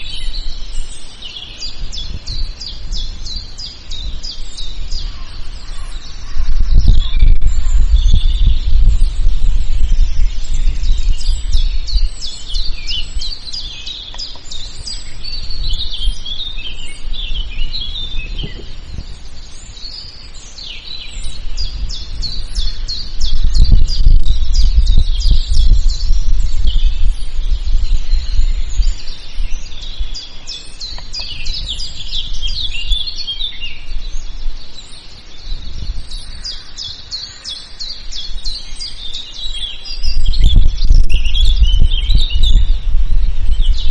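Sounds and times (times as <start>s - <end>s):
birds chirping and singing: 0.0s - 43.9s
low rumble: 4.2s - 13.6s, 21.3s - 30.2s.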